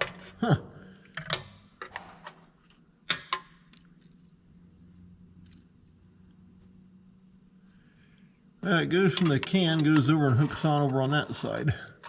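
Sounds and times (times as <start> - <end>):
faint steady hum: 0.0 - 12.0
metallic clinks and rattles: 1.0 - 6.0.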